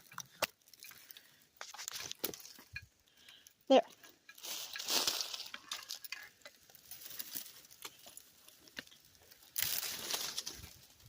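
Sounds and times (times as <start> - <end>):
twigs snapping and crackling: 0.0 - 11.0
rustling through undergrowth: 3.9 - 11.0.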